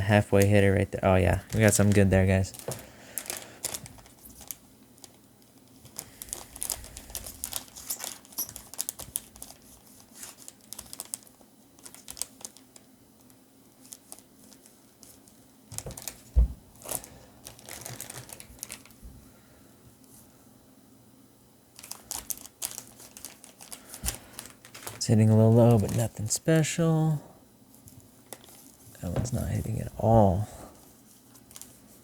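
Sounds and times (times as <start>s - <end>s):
foil wrappers crinkling: 0.1s - 19.0s, 21.8s - 27.0s, 27.7s - 32.0s
cards clicking and rustling: 21.8s - 25.0s.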